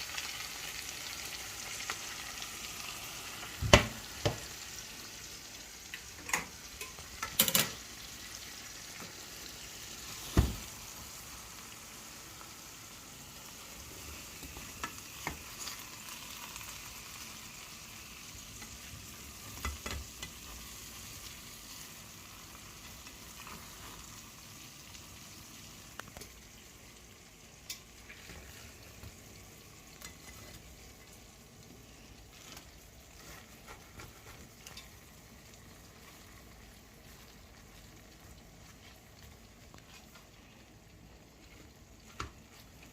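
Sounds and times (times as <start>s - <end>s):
food sizzling in a pan: 0.0s - 42.9s.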